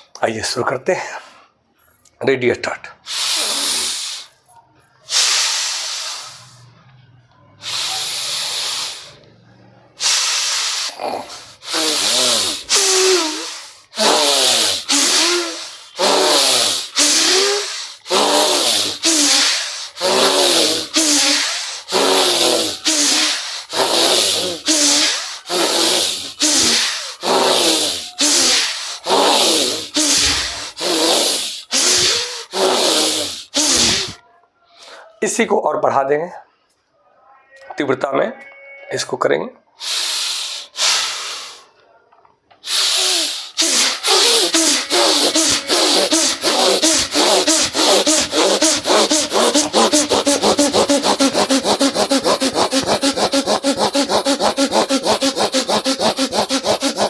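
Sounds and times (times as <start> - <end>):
man breathing forcefully: 3.1 - 4.3, 5.1 - 6.4, 7.6 - 9.2, 10.0 - 34.2, 39.8 - 41.7, 42.6 - 57.0.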